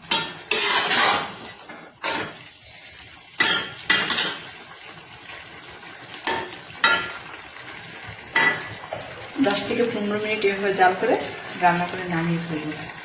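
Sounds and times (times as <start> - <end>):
spoon scraping a metal pan: 0.0 - 2.4, 3.4 - 4.5
frying hiss: 0.0 - 13.0.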